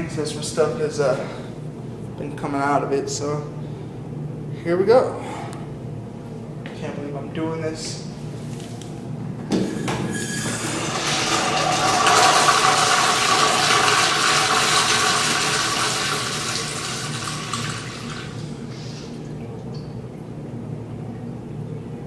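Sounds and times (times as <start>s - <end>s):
toilet flushing: 9.6s - 19.4s.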